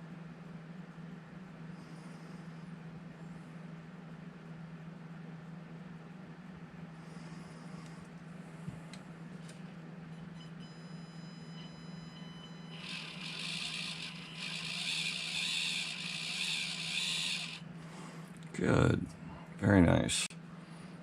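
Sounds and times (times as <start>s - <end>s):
small electric motor whirring: 12.7s - 17.7s.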